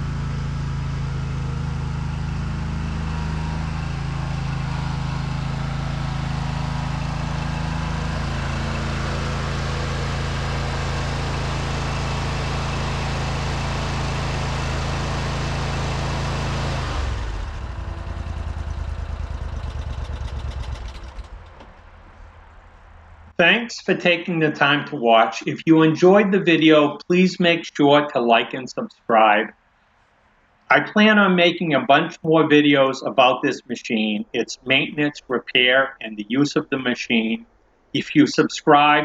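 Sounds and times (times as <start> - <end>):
engine idling and shutting down: 0.0 - 23.4.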